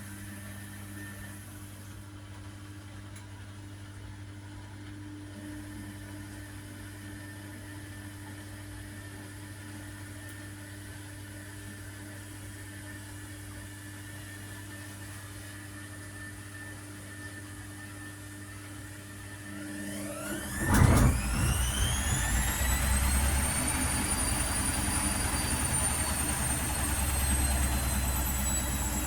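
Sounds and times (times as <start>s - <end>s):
washing machine humming: 17.8s - 29.0s
faint high whine: 19.9s - 29.0s.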